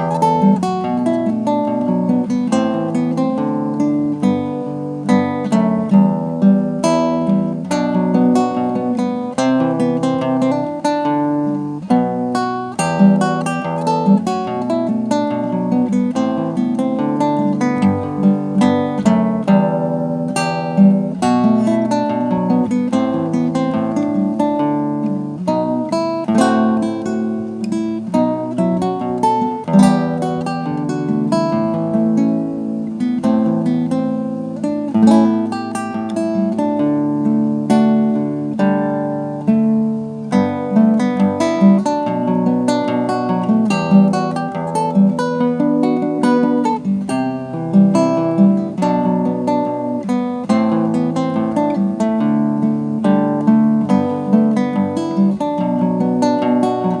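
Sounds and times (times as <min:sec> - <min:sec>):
acoustic guitar instrumental: 0:00.0 - 0:57.0.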